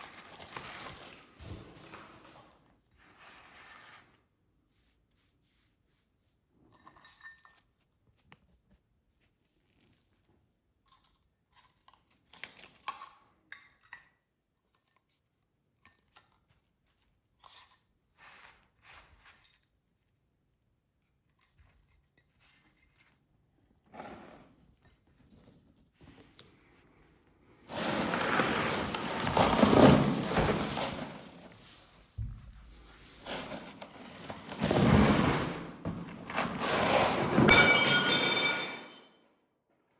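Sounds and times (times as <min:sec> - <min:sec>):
packaging rustling and tearing: 0:00.0 - 0:02.4, 0:27.7 - 0:31.6, 0:33.2 - 0:37.4.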